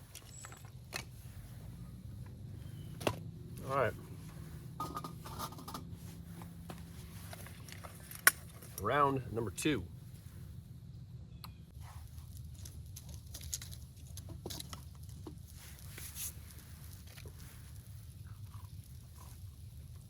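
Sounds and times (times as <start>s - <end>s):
low rumble: 0.9s - 14.1s
cooking gear clicks and scrapes: 4.8s - 9.0s.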